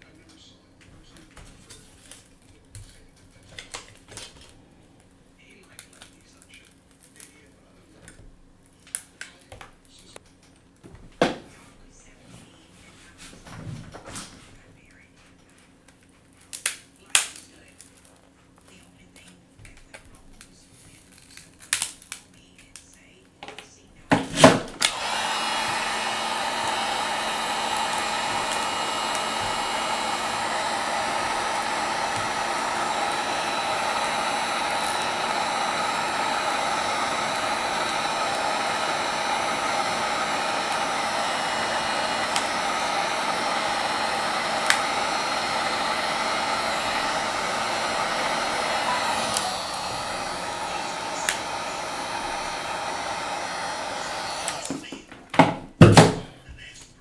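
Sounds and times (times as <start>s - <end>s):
hot-air blower running: 24.1s - 56.2s.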